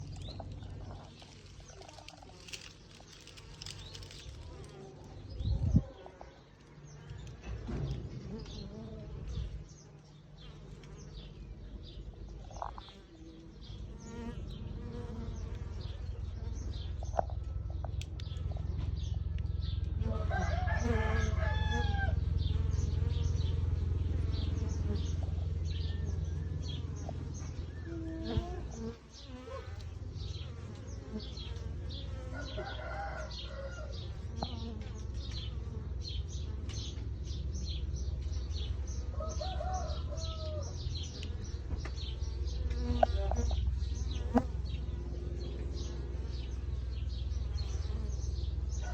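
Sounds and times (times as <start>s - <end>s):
bees buzzing: 0.0s - 5.4s, 12.4s - 48.9s
small birds chirping: 0.0s - 48.9s
rooster crowing: 20.0s - 22.2s, 32.2s - 34.1s, 39.1s - 40.8s.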